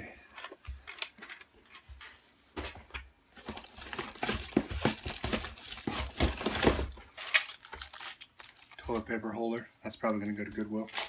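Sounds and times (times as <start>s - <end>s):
packaging crinkling and rustling: 3.3s - 9.1s, 10.8s - 11.0s.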